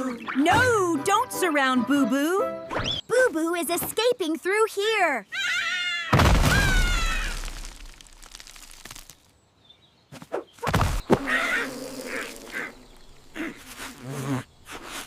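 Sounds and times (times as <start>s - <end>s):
animal-like cartoon calls: 11.1s - 12.8s.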